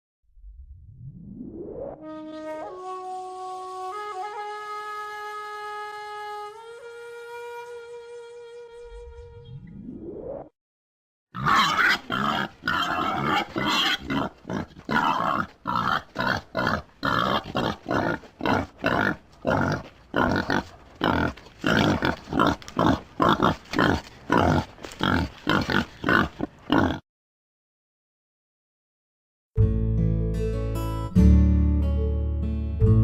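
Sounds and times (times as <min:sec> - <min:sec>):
wild boar grunting and squealing: 0:11.4 - 0:27.0.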